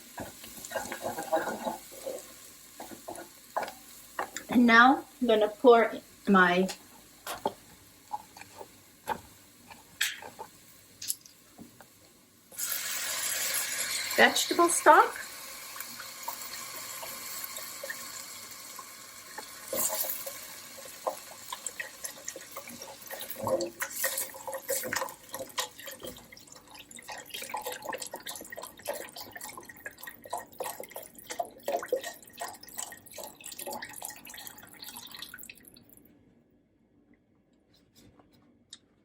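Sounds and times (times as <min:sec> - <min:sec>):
liquid pouring into pot: 0:15.2 - 0:35.9.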